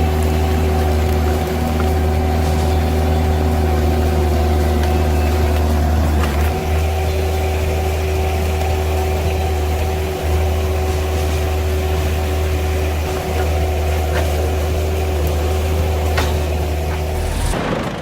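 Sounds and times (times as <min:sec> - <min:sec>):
machine engine running: 0:00.0 - 0:18.0
high whine: 0:16.2 - 0:18.0.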